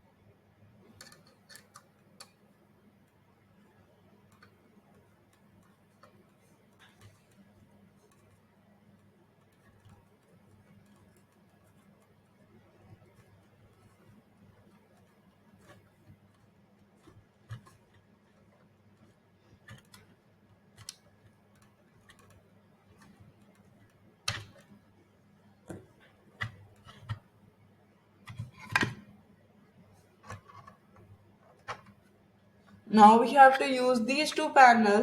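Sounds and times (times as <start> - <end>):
plastic parts clicking and knocking: 0.9 - 2.5, 12.8 - 27.4, 28.2 - 29.2, 30.0 - 32.8.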